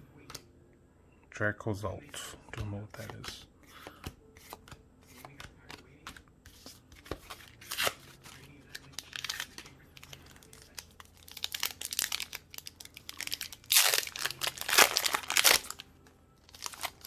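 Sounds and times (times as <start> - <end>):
foil wrapper crinkling and tearing: 7.6 - 17.0.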